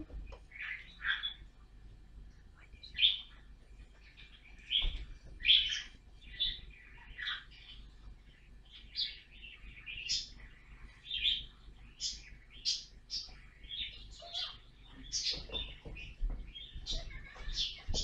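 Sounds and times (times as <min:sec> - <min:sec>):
budgerigars chirping: 0:00.5 - 0:01.4, 0:04.2 - 0:07.8, 0:11.1 - 0:18.0.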